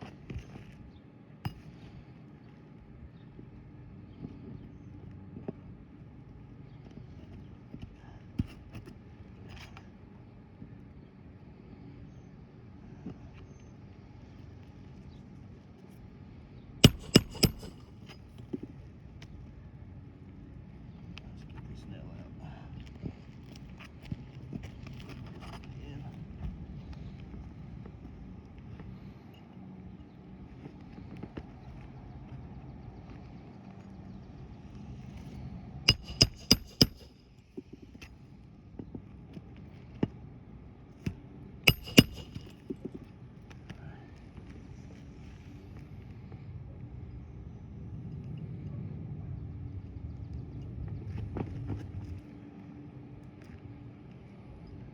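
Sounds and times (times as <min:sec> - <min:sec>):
metallic hand tool strikes: 0:16.8 - 0:18.0, 0:35.9 - 0:37.2, 0:41.7 - 0:42.7.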